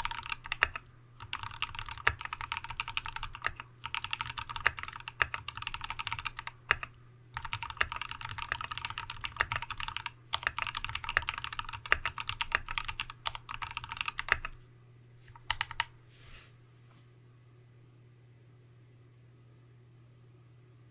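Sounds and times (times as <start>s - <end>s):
typing on mechanical keyboard: 0.0s - 14.6s, 15.4s - 15.9s.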